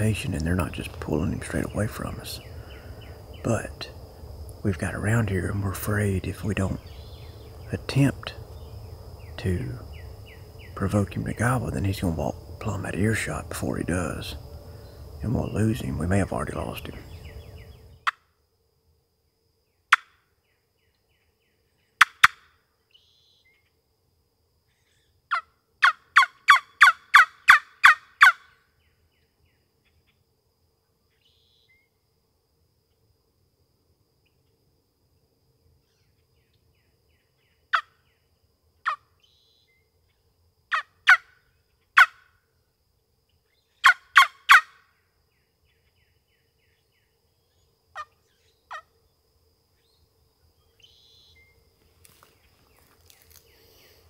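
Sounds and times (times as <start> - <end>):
turkey call hen yelps: 25.3 - 28.5, 38.8 - 39.1, 40.7 - 41.4, 42.0 - 42.3, 43.8 - 44.8, 48.0 - 48.9.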